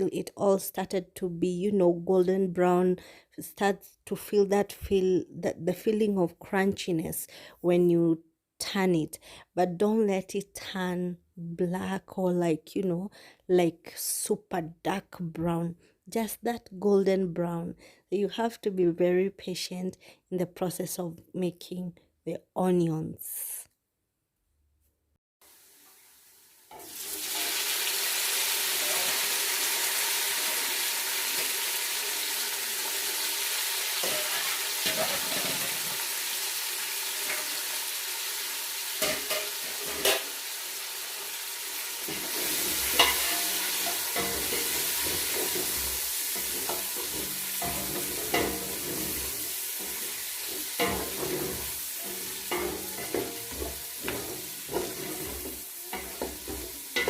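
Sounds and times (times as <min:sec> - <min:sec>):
onions sizzling in oil: 0:25.4 - 0:57.0
spoon scraping a pot: 0:34.0 - 0:36.0, 0:42.0 - 0:57.0.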